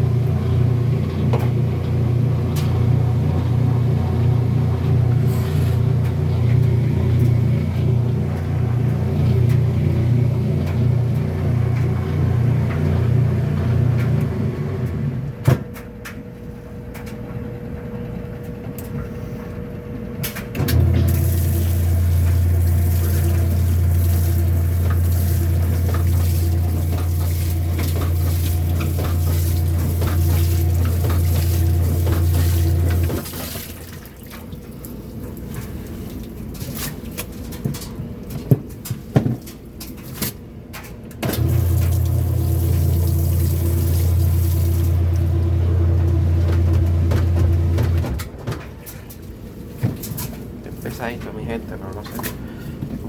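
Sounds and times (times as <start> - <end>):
washing machine motor hum: 0.0 - 53.0
water: 21.0 - 38.3, 41.4 - 45.7.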